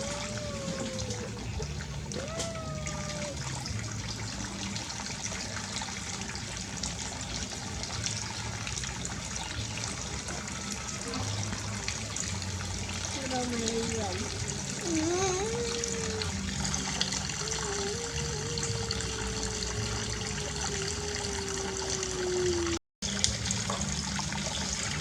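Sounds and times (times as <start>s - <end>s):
short wavering calls: 0.0s - 3.6s
water trickling: 0.0s - 25.0s.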